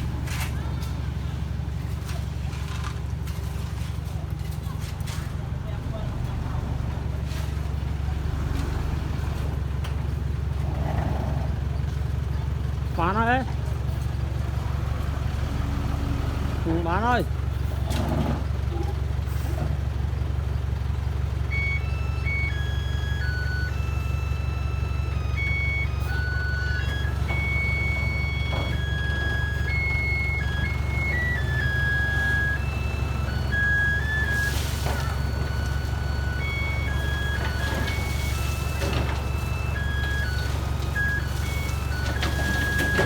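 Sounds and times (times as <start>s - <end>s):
heavy diesel engine rumble: 0.0s - 43.0s
electronic beeping jingle: 21.6s - 43.0s.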